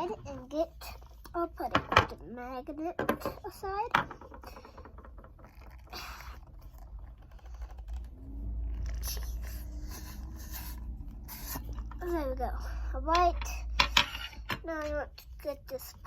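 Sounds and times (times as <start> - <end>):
low rumble: 7.8 - 13.0.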